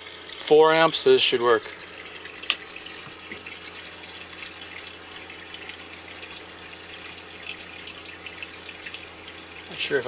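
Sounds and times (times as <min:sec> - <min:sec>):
water pump humming: 0:00.0 - 0:10.0
water running into washing machine: 0:00.0 - 0:10.0.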